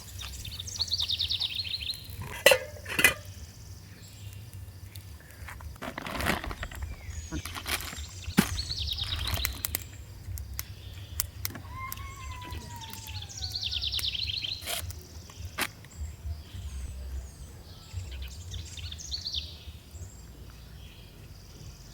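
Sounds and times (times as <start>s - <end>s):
low steady hum: 0.0s - 21.9s
birds rapid high trills: 10.7s - 20.0s
bird long falling whistle: 11.6s - 14.5s.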